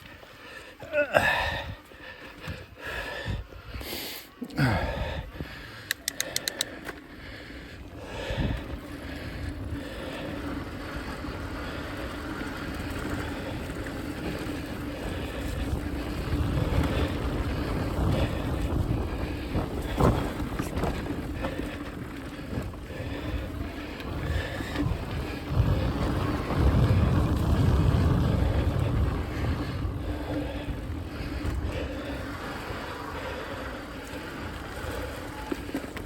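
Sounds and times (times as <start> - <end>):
bike rolling over dirt trail: 6.7 - 36.0
wind buffeting microphone: 7.6 - 36.0.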